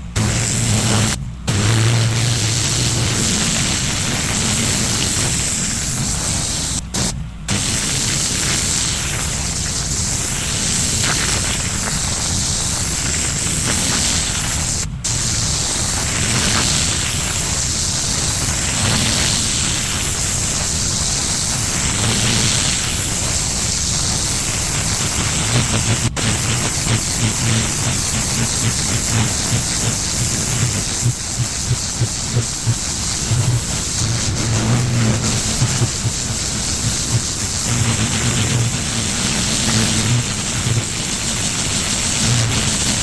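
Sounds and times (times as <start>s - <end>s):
low drone: 0.0s - 9.8s
pressure washer spraying pavers: 0.0s - 43.0s.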